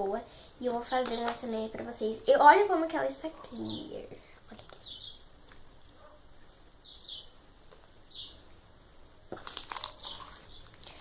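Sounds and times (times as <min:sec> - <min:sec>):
faint bird chirps: 0:04.7 - 0:05.3
slime clicking and crackling: 0:09.3 - 0:11.0.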